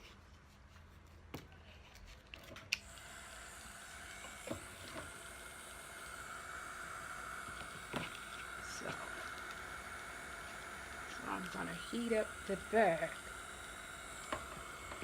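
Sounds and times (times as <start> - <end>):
heat gun fan whine and hiss: 2.4 - 15.0.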